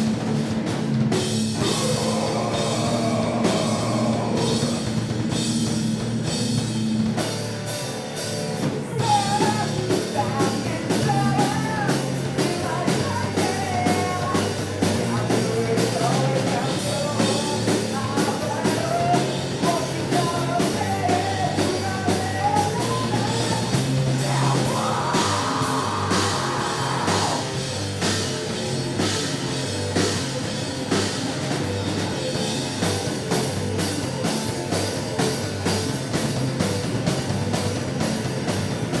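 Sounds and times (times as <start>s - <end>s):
bass line: 0.0s - 39.0s
drum kit beat: 0.0s - 39.0s
electric guitars: 0.0s - 39.0s
person singing: 1.6s - 4.9s, 8.9s - 27.6s.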